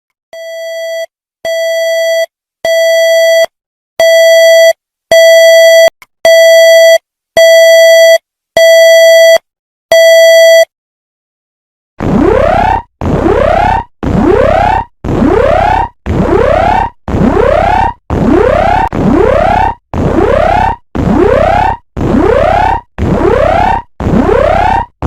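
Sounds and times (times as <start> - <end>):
buzzy electronic alert beeps: 12.0 - 25.0.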